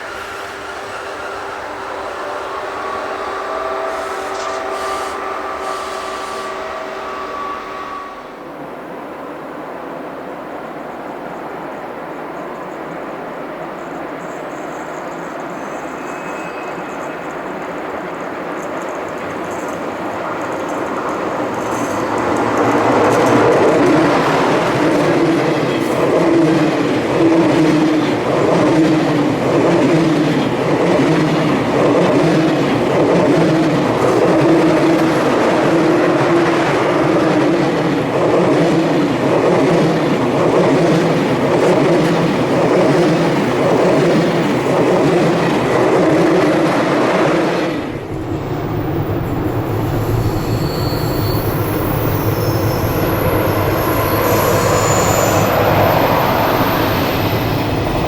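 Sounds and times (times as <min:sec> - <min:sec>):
electric train running on rails: 0:00.0 - 0:58.0.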